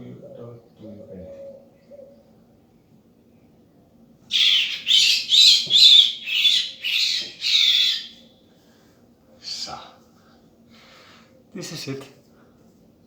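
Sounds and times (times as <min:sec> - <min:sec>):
bird squawking distress calls: 0:04.3 - 0:08.3.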